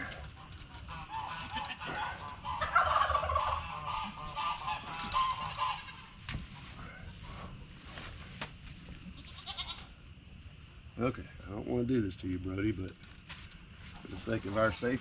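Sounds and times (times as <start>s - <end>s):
honking farm animal calls: 0.0s - 6.2s, 9.1s - 10.0s.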